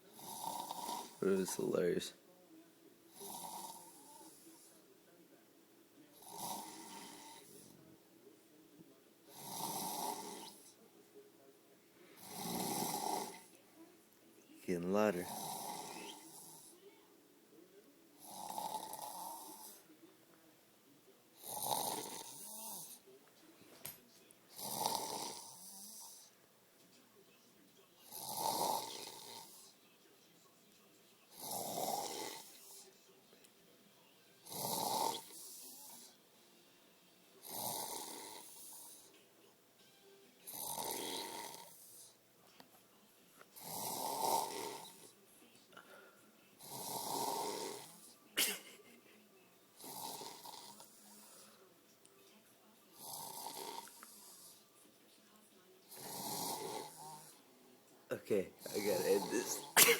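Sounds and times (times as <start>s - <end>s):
person snoring loudly: 0.1s - 1.4s, 6.2s - 7.5s, 9.3s - 10.6s, 12.2s - 13.5s, 15.2s - 16.6s, 18.2s - 19.8s, 21.4s - 23.0s, 24.6s - 26.3s, 28.1s - 29.7s, 31.4s - 32.5s, 34.5s - 35.8s, 37.4s - 39.0s, 40.5s - 42.0s, 43.6s - 45.0s, 46.6s - 48.0s, 53.0s - 54.2s, 55.9s - 57.4s, 58.6s - 59.8s.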